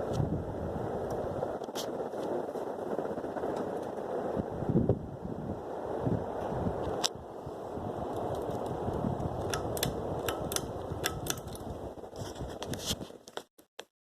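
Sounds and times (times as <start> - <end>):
ceiling fan airflow rushing: 0.0 - 13.0
sharp clicks: 9.3 - 11.7.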